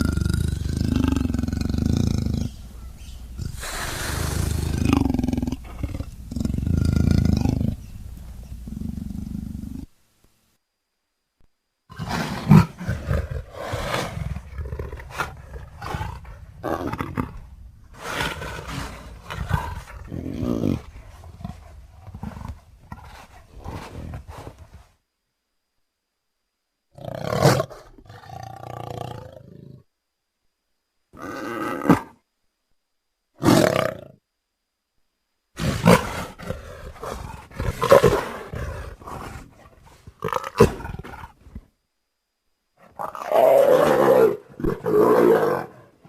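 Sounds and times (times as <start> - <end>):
leopard calling: 0.0 - 9.9
leopard grunting: 0.0 - 9.9, 11.9 - 24.6, 35.6 - 41.5.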